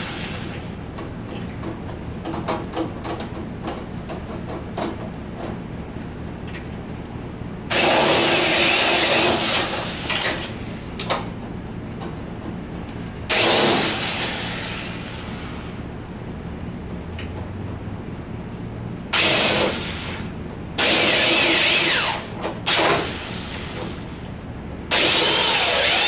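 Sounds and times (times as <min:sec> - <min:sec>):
power drill drilling rivets: 0:20.8 - 0:23.4, 0:24.9 - 0:26.0.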